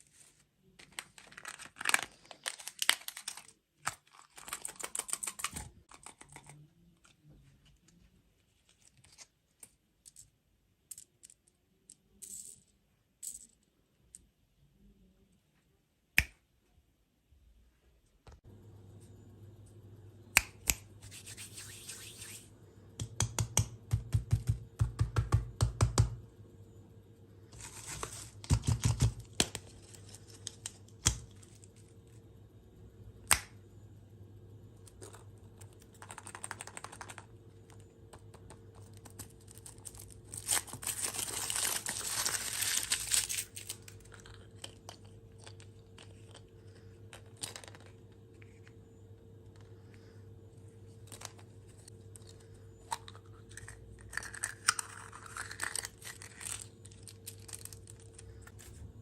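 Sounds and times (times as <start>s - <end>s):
plastic packaging crinkling and tearing: 0.8s - 6.5s, 39.1s - 44.8s, 53.5s - 58.5s.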